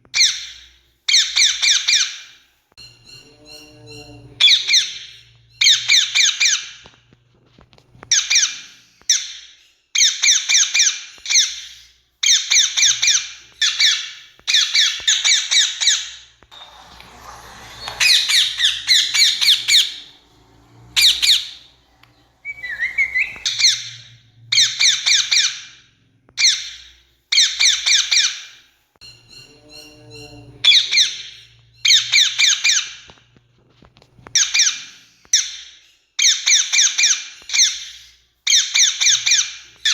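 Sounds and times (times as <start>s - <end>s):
parakeet squawking: 3.4s - 6.8s, 10.0s - 20.3s, 20.9s - 25.8s, 26.4s - 28.5s, 29.6s - 33.0s.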